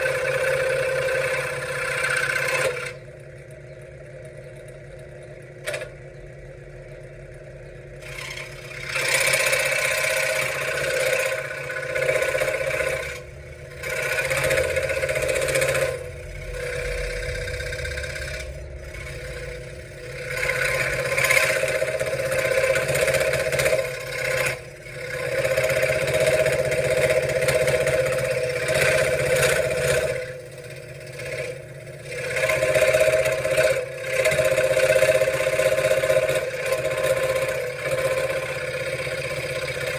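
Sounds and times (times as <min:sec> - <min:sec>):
saw blade cutting wood: 0:00.0 - 0:03.0, 0:08.0 - 0:39.9
scroll saw motor humming: 0:00.0 - 0:03.2, 0:07.9 - 0:39.9.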